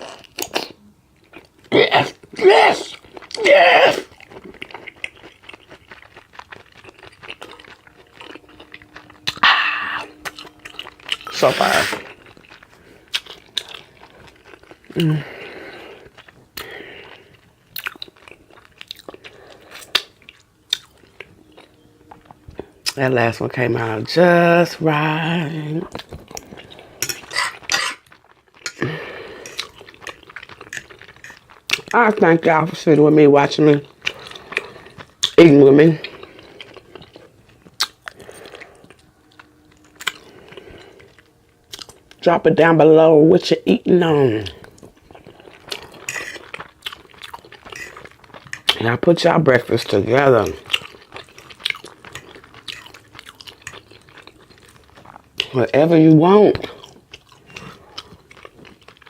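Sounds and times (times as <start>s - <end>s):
person chewing with wet smacking: 0.0s - 3.4s, 4.1s - 23.9s, 25.8s - 32.3s, 33.7s - 42.2s, 44.4s - 55.7s, 56.5s - 59.0s
short voiced sound: 11.3s - 12.0s.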